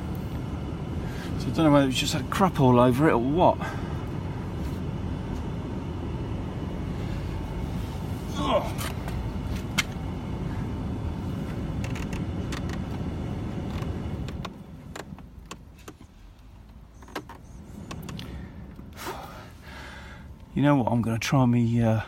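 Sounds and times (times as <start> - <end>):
heater blower fan whooshing: 0.0 - 14.8
clicks and knocks of handling: 11.8 - 13.0.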